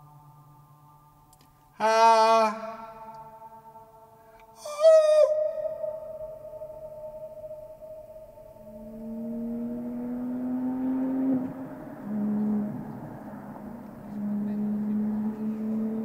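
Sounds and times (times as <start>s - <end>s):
vehicle engine revving: 8.4s - 16.0s.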